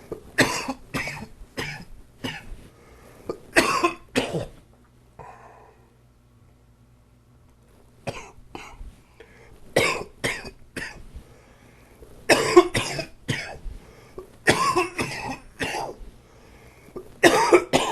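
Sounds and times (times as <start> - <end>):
man coughing: 0.4 - 2.5, 3.6 - 4.6, 12.3 - 13.6, 14.5 - 16.0, 17.2 - 17.9.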